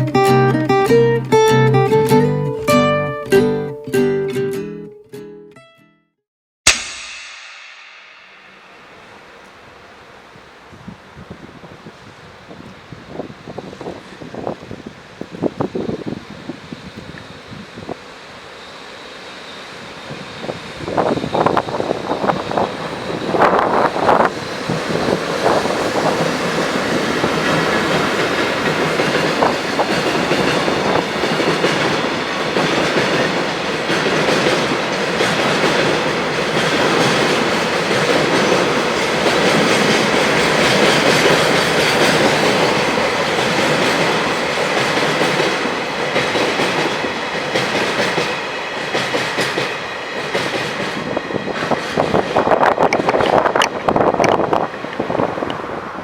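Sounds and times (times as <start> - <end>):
freight train passing: 7.8 - 56.0
wheels clicking over rail joints: 51.6 - 55.7.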